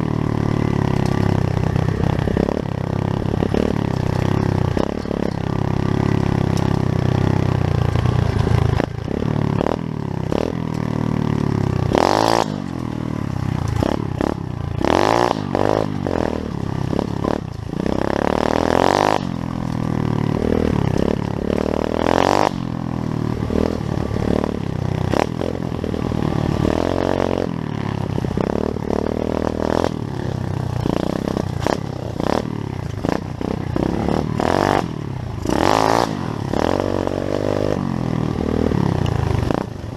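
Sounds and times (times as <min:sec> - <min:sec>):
small motorbike engine revving: 0:00.0 - 0:39.9
rattling clatter: 0:00.9 - 0:07.1.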